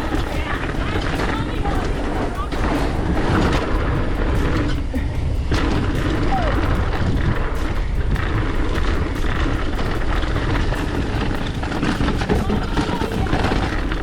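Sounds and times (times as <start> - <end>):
heavy rain: 0.0 - 14.0
wind buffeting microphone: 0.0 - 14.0.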